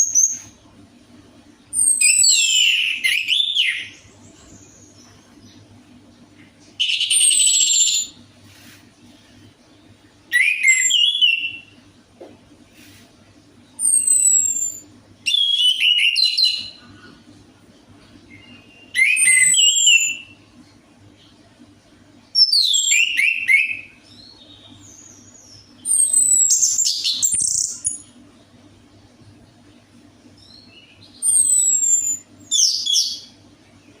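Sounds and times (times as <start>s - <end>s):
thrush singing whistles and trills: 1.7s - 5.0s, 6.8s - 8.2s, 10.3s - 11.8s, 13.8s - 16.8s, 18.4s - 20.4s, 22.4s - 28.1s, 30.4s - 33.3s.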